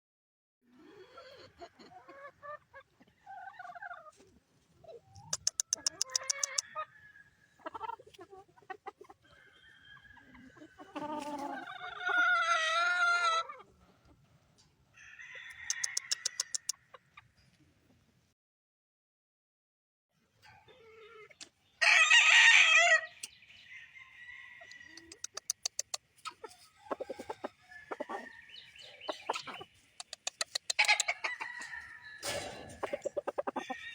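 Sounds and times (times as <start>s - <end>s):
roosters clucking: 0.8s - 17.3s, 20.5s - 33.9s
rooster crowing: 15.0s - 16.7s, 23.7s - 25.2s, 26.7s - 28.8s, 30.8s - 32.6s, 33.4s - 33.9s.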